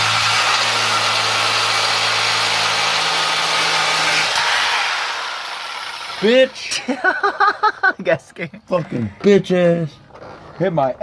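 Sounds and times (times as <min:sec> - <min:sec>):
reciprocating saw cutting metal pipe: 0:00.0 - 0:07.0.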